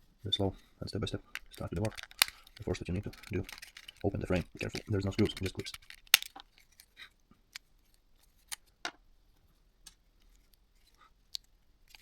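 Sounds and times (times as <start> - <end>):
sharp plastic clicks: 1.3 - 6.7, 11.3 - 12.0.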